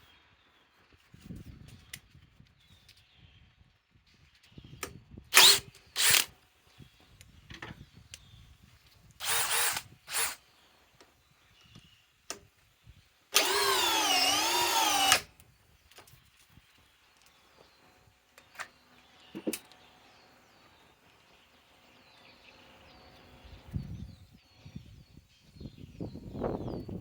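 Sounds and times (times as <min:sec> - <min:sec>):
cordless drill motor whining: 0:05.3 - 0:06.3, 0:09.2 - 0:10.4, 0:13.3 - 0:15.3.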